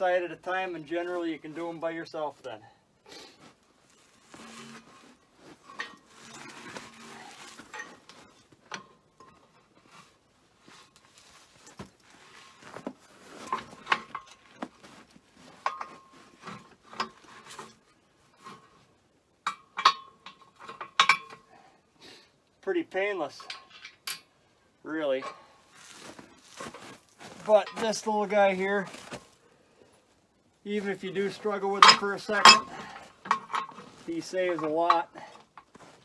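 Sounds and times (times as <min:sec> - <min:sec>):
metal scraping: 0:03.4 - 0:08.5, 0:30.7 - 0:36.0
metal clanks and clinks: 0:03.9 - 0:10.0, 0:11.4 - 0:18.8, 0:19.5 - 0:21.5, 0:23.4 - 0:24.3, 0:30.8 - 0:36.0.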